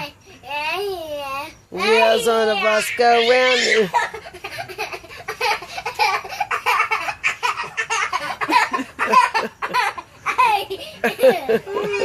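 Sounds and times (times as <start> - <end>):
small child laughing: 2.6 - 12.0
people laughing: 3.9 - 12.0.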